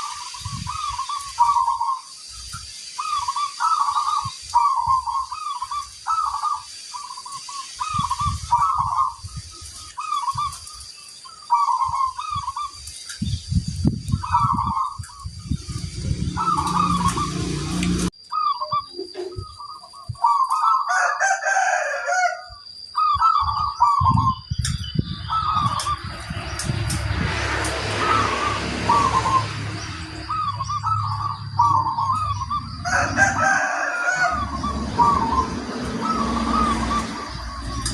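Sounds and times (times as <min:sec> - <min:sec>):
doves cooing: 0:00.0 - 0:02.2, 0:03.0 - 0:12.8, 0:14.2 - 0:24.4, 0:25.2 - 0:37.9
louder longer bird call: 0:27.9 - 0:37.9.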